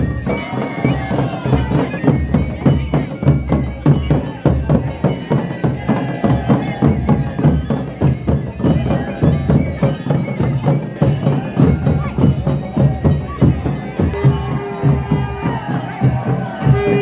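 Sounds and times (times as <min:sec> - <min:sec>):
fast percussion beat: 0:00.0 - 0:17.0
folk-style music: 0:00.0 - 0:17.0.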